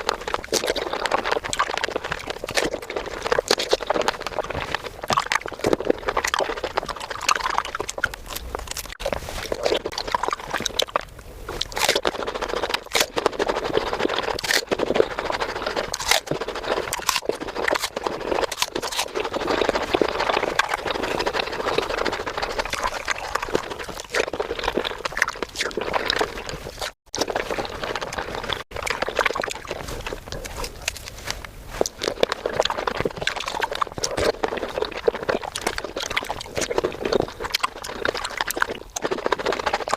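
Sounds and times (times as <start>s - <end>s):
fruit crunching and chewing: 0.0s - 39.9s.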